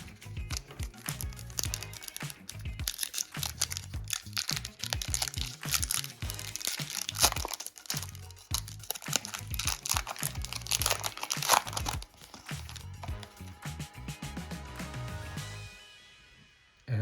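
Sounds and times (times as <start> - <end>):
foil wrapper crinkling: 0.0 - 13.5
background music: 0.0 - 17.0.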